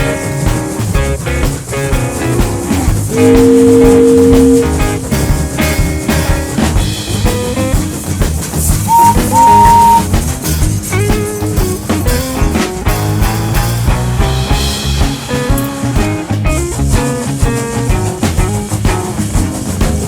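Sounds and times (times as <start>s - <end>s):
upbeat music with drums: 0.0s - 20.0s
loud held tones: 2.2s - 6.9s, 8.8s - 10.2s.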